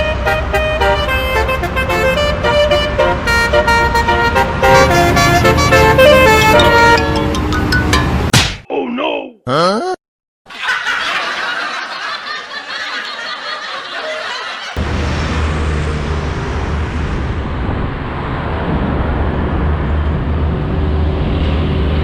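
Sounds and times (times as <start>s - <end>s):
large vehicle engine rumble: 0.0s - 8.3s, 14.8s - 22.0s
laughter: 10.5s - 14.8s.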